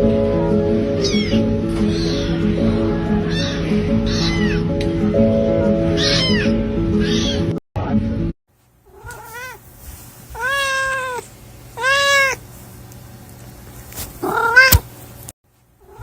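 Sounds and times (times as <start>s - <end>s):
cat meowing: 1.0s - 2.4s, 3.3s - 4.7s, 6.0s - 7.5s, 8.9s - 9.6s, 10.4s - 11.2s, 11.8s - 12.4s, 14.2s - 14.9s.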